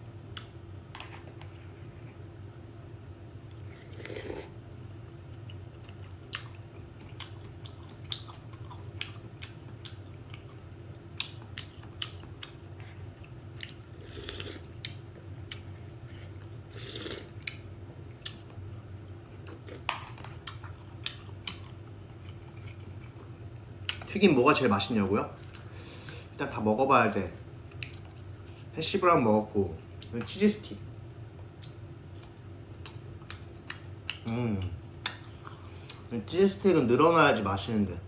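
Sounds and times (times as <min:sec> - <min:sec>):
person chewing food: 0:05.3 - 0:18.6, 0:19.2 - 0:24.1, 0:31.6 - 0:36.1.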